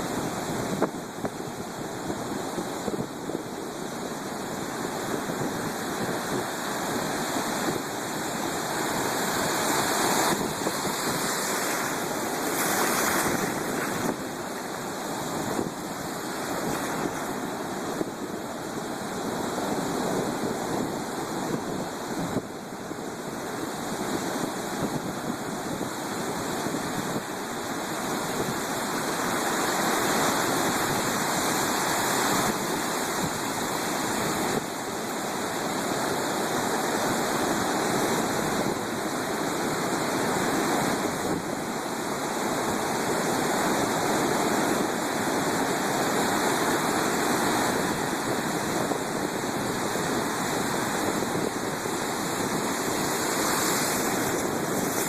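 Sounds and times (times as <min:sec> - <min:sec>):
storm waves breaking: 0:00.0 - 0:21.6, 0:40.3 - 0:55.0.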